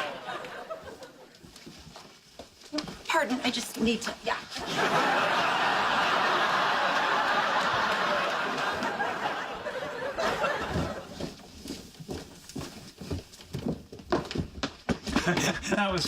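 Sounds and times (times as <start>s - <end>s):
studio audience laughter: 0.0s - 1.4s, 4.6s - 11.2s
faint knocks and rustles: 0.9s - 4.7s.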